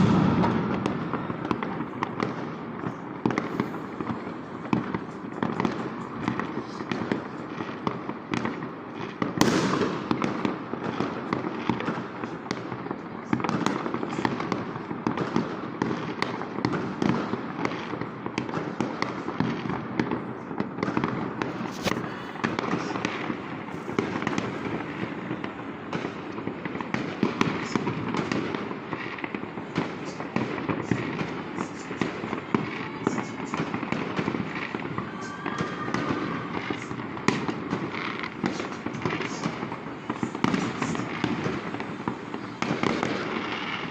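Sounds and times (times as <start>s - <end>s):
loud firework bang: 0.0s - 2.4s, 9.4s - 10.4s
fireworks bangs and crackles: 0.0s - 43.9s.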